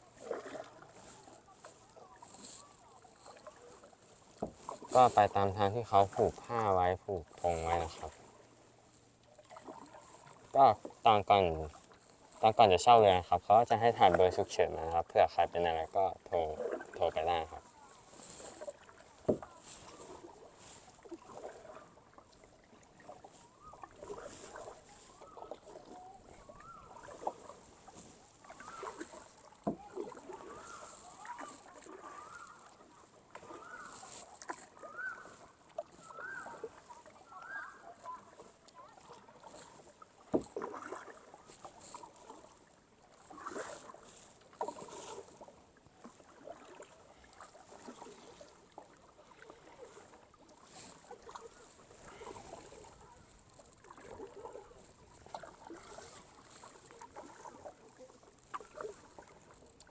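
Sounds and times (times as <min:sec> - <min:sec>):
paddle splashing in water: 0:00.0 - 0:59.9
paddle knocking against hull: 0:04.3 - 0:08.1, 0:13.5 - 0:15.0, 0:18.4 - 0:20.4, 0:21.0 - 0:36.8, 0:39.0 - 0:42.5, 0:47.7 - 0:57.8, 0:58.5 - 0:59.6
bird calling repeated notes: 0:33.5 - 0:34.0, 0:34.8 - 0:35.3, 0:36.0 - 0:38.3.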